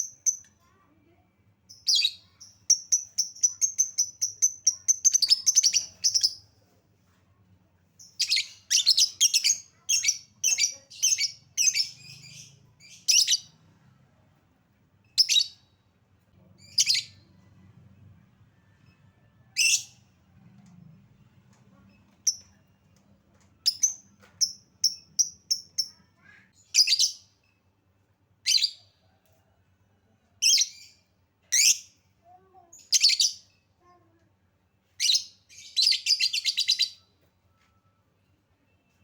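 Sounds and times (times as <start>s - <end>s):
lovebird chirping: 1.7s - 6.4s, 8.0s - 13.6s, 23.6s - 27.3s.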